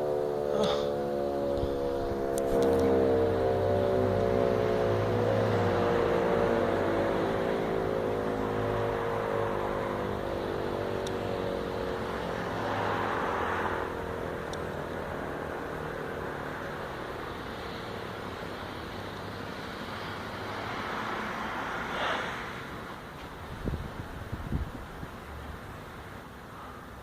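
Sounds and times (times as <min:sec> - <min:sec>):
mechanical siren winding down: 0:00.0 - 0:18.3.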